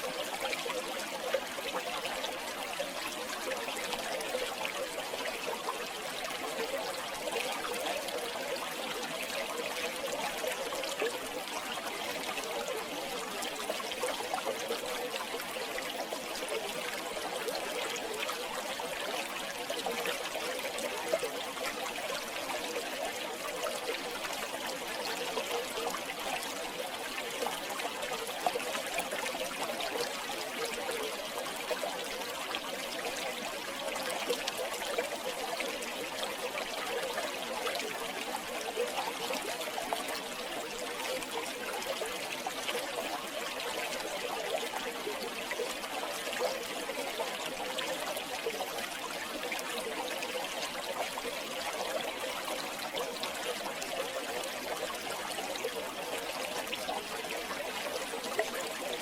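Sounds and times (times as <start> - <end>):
river water flowing over stones: 0.0 - 59.0.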